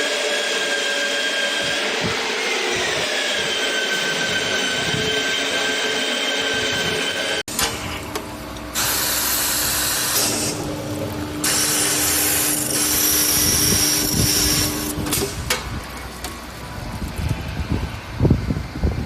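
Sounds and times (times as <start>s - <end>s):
drill motor hum: 0.0s - 15.6s
drill bit grinding glass: 2.6s - 7.4s, 11.4s - 15.2s.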